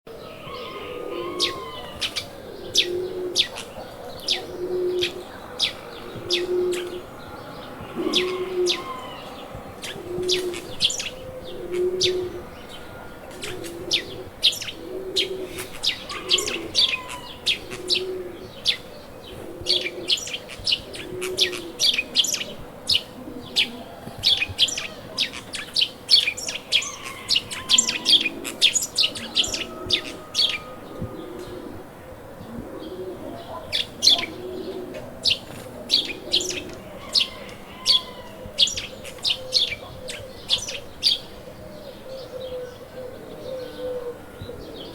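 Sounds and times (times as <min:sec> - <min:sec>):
dove cooing low: 0:00.1 - 0:44.9
songbirds chirping: 0:00.1 - 0:44.9.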